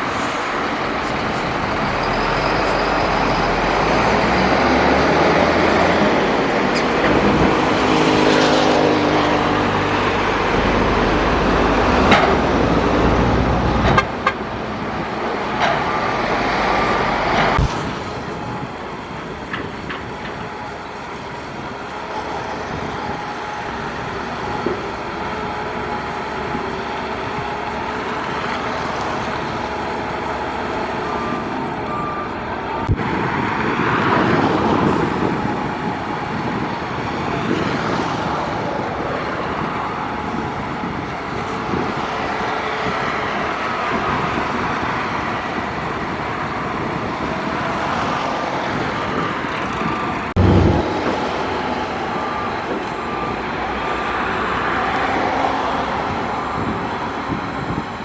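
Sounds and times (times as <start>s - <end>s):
heavy diesel engines running: 0.0s - 58.0s
loud low thump: 12.8s - 15.2s
reversing alarm beeping: 12.8s - 16.2s, 50.4s - 55.0s.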